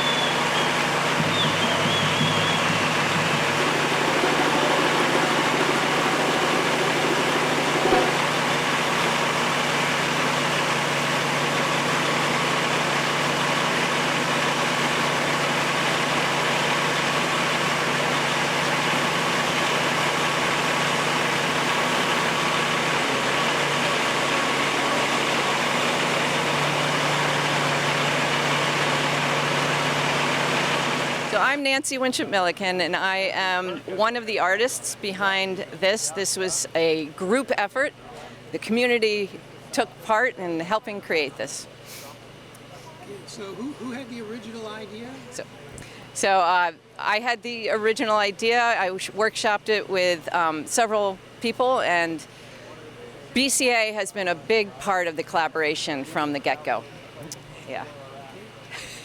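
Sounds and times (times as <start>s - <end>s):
vehicle engine idling: 0.0s - 46.2s.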